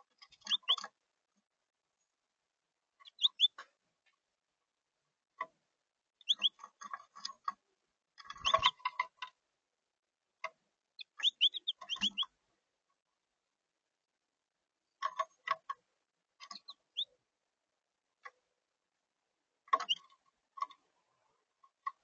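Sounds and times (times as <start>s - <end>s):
finches chirping: 0.2s - 0.9s, 3.0s - 3.6s, 6.2s - 6.7s, 8.2s - 8.9s, 11.0s - 12.3s, 16.4s - 17.2s
sharp ticking clicks: 11.0s - 12.3s.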